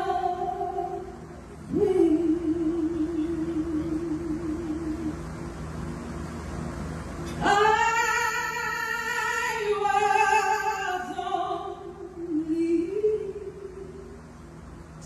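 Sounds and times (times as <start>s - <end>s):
woman singing a ballad: 0.0s - 5.2s, 7.3s - 14.1s.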